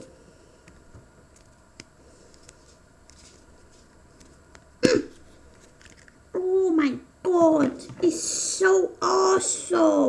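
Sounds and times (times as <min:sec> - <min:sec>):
plastic capsule clicks and handling: 0:05.7 - 0:06.2
person exclaiming loudly: 0:06.4 - 0:10.0.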